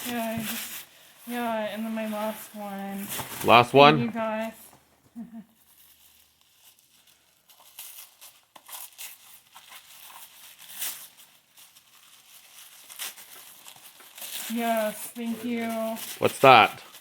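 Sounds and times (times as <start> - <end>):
gift paper tearing and rustling: 0.0 - 17.0.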